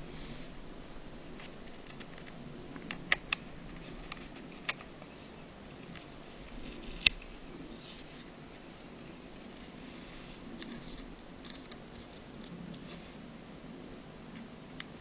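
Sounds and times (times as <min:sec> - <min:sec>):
faint handling: 0:01.3 - 0:13.3.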